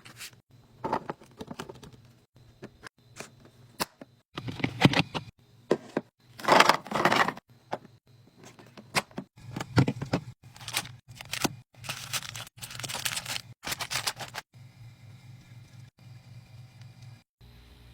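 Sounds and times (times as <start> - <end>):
packaging crinkling and rustling: 10.4 - 14.5.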